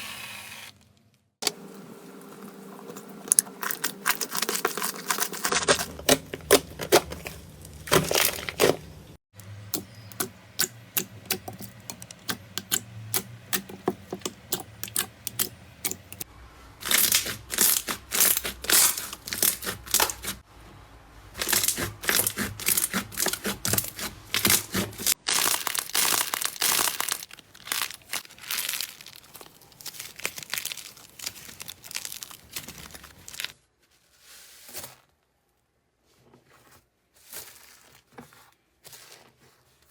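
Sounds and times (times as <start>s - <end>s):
slime squelching and crackling: 3.4s - 9.1s, 16.8s - 20.4s, 21.4s - 33.6s.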